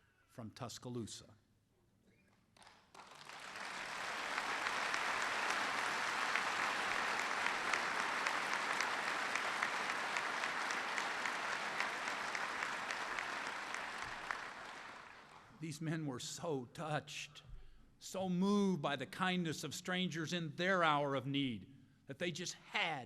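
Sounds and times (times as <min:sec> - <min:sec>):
audience applauding: 0:02.6 - 0:15.5.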